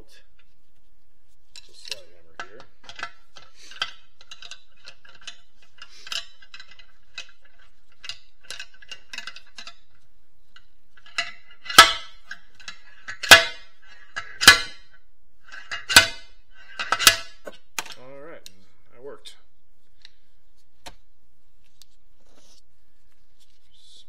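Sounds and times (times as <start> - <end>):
slide hammer metal impacts: 11.0 - 17.9.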